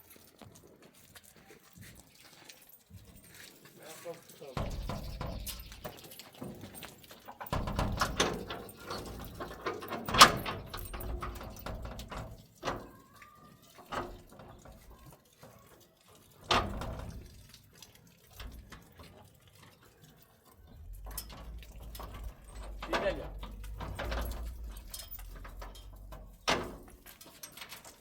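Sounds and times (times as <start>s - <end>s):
knocks and thuds of objects handled: 4.6s - 6.8s.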